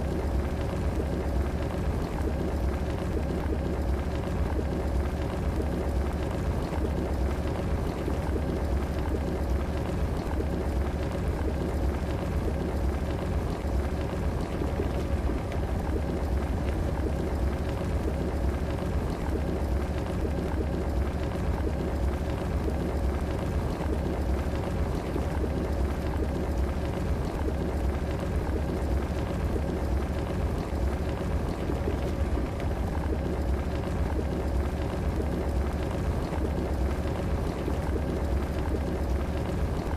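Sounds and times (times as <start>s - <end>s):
electric kettle boiling water: 0.0s - 39.9s
faint hum: 0.0s - 39.9s.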